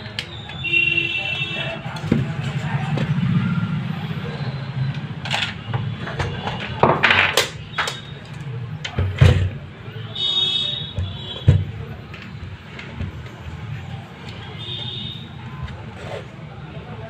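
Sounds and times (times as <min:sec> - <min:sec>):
tools clicking and knocking: 0:04.9 - 0:09.6.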